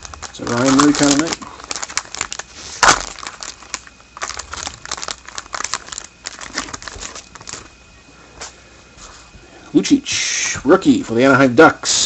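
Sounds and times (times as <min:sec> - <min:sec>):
plastic wrapper crinkling and tearing: 0:00.0 - 0:07.8.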